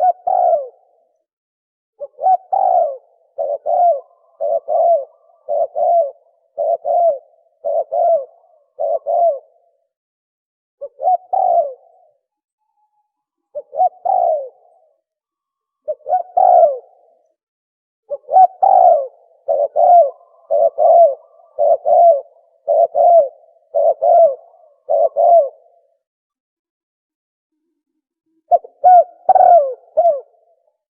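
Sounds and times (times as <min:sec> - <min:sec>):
dove cooing: 0:00.0 - 0:01.1, 0:02.0 - 0:09.9, 0:10.8 - 0:12.2, 0:13.5 - 0:15.0, 0:15.8 - 0:17.3, 0:18.1 - 0:26.0, 0:28.4 - 0:30.6.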